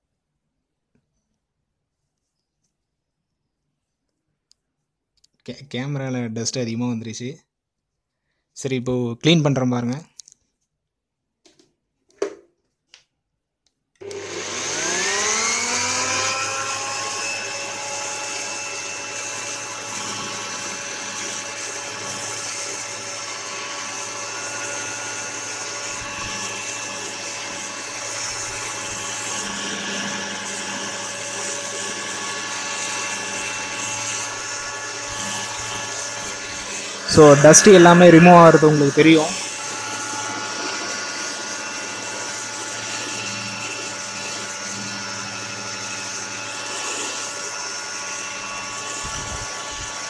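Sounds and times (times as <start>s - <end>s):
electric air blower whine: 14.0s - 50.0s.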